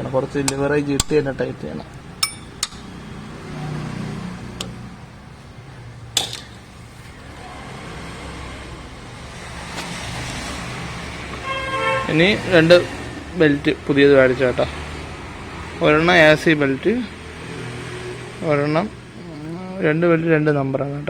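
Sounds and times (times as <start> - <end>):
hand tools knocking on bolts: 0.0 - 3.6
road traffic rumble: 0.0 - 21.0.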